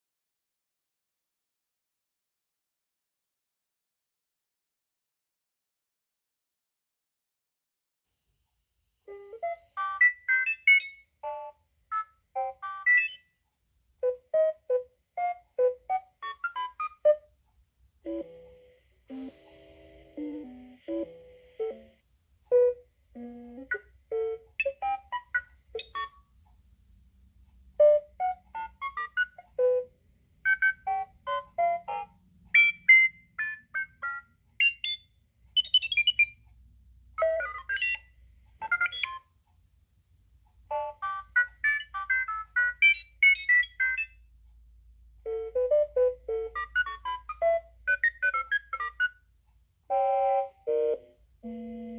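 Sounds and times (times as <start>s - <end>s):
robot beeps chirps and whistles: 24.2s - 26.2s, 32.6s - 36.4s, 37.2s - 39.2s, 41.6s - 44.2s.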